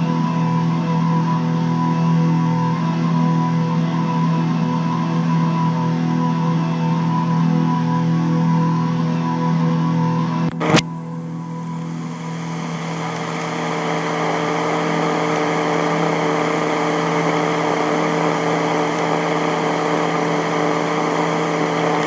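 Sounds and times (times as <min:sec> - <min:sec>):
mechanical drone with hiss: 0:11.6 - 0:22.0.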